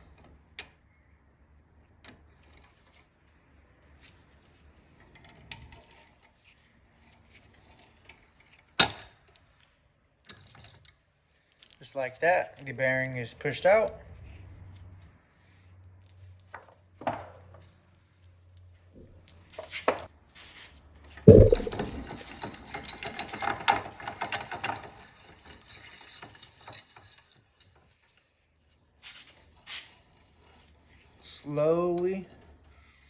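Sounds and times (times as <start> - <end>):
low hum: 21.3 - 22.0.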